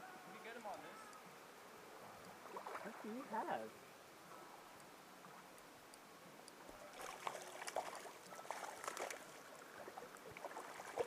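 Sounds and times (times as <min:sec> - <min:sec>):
fish splashing in water: 0:02.4 - 0:03.2, 0:06.9 - 0:11.0.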